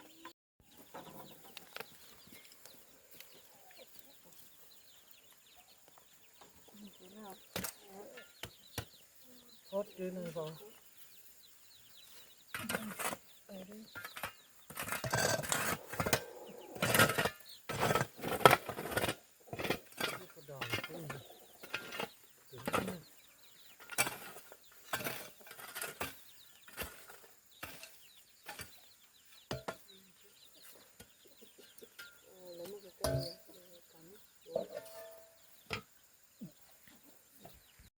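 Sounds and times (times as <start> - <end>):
hand tool knocks and scrapes: 13.9 - 29.9, 30.6 - 33.6, 34.6 - 35.9.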